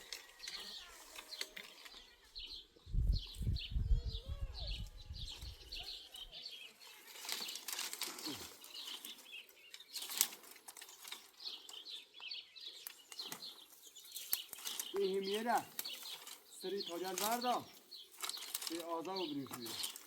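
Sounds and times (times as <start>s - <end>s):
small birds chirping: 0.0s - 20.0s
brief rustles: 6.9s - 11.9s, 12.8s - 20.0s.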